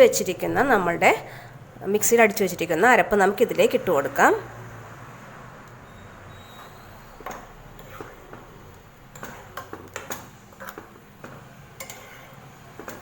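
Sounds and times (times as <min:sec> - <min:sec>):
spoon tapping and scraping vessels: 0:06.5 - 0:13.0.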